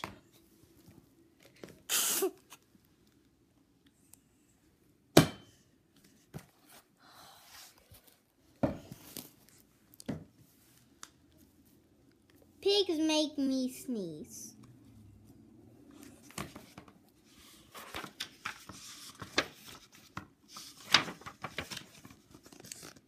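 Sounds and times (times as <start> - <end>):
rustling and handling noises: 5.9 - 12.6, 15.2 - 23.0.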